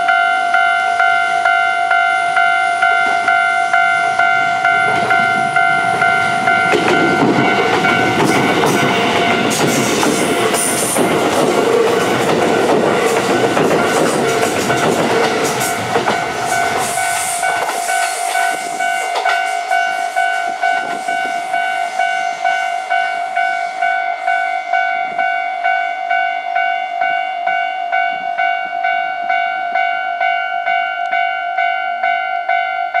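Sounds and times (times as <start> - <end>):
train rumble: 0.0 - 26.1
level crossing bell ringing: 0.0 - 33.0.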